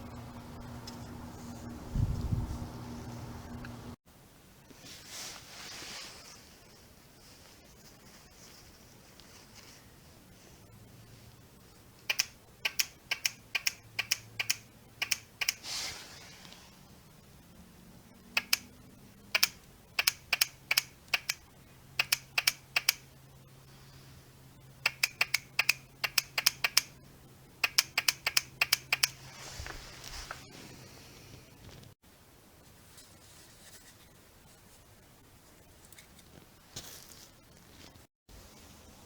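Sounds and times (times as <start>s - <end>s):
sharp clicks in bursts: 12.0s - 15.6s, 18.3s - 18.7s, 19.3s - 23.2s, 24.8s - 27.0s, 27.6s - 29.2s.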